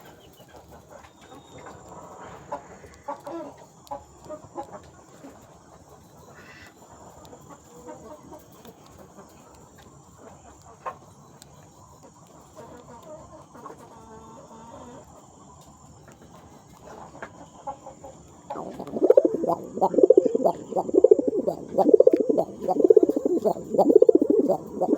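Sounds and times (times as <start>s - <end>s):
chickens clucking: 16.9s - 24.9s
faint high whine: 18.3s - 24.9s.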